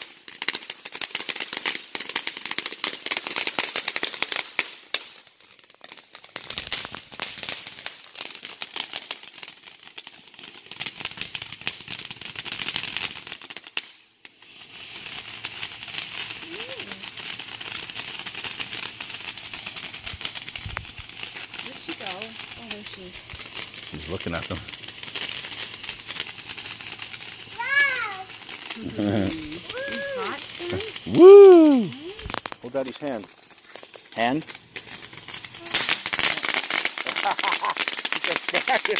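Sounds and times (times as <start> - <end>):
fireworks crackling: 0.0 - 38.9
high hissing spray: 14.4 - 17.2, 17.8 - 33.2, 34.9 - 38.9.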